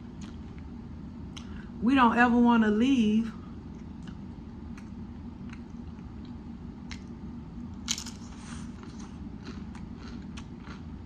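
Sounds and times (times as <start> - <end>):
wet chewing with crunches: 0.0 - 0.7, 3.6 - 11.0.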